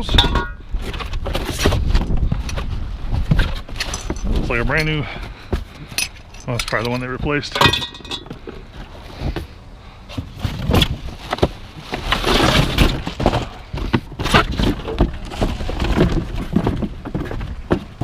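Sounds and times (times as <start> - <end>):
junk clanking and rattling: 0.0 - 18.0.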